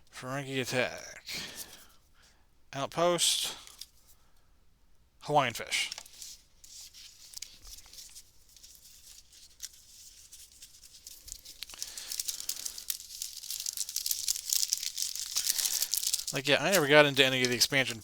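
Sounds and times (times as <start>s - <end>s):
wrapper tearing and crinkling: 6.0s - 18.0s.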